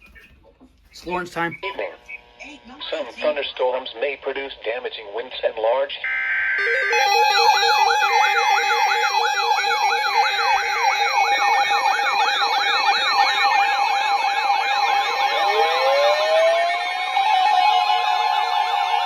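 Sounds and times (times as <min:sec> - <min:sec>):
fast electronic siren yelp: 0:06.0 - 0:19.0
slow rising siren wail: 0:06.0 - 0:19.0.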